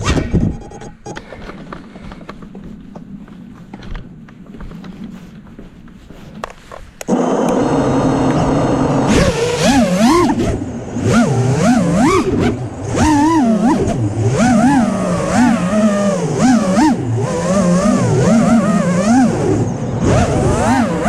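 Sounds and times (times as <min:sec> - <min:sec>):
quadcopter motors whining: 0:07.1 - 0:21.0.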